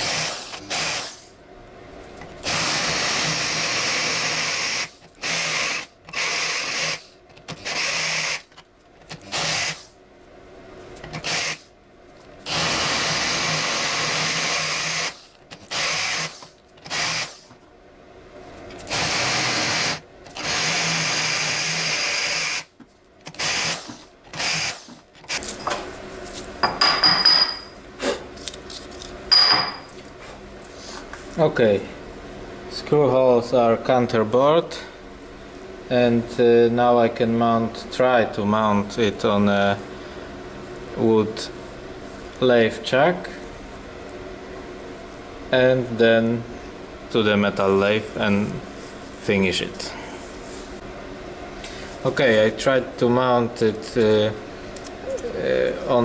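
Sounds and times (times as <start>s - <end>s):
electric drill drilling steel: 0.0s - 1.2s, 2.4s - 7.0s, 7.6s - 8.4s, 9.2s - 9.9s, 11.2s - 11.6s, 12.5s - 17.5s, 18.9s - 22.7s, 23.3s - 25.4s.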